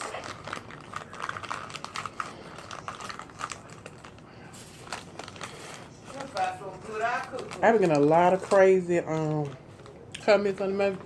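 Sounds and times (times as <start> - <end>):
crunchy chewing: 0.0 - 6.4.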